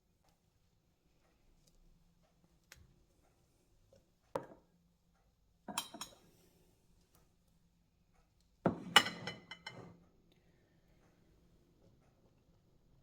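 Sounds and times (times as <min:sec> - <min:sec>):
dishes and cutlery clinking: 0:05.7 - 0:06.2, 0:08.7 - 0:10.0.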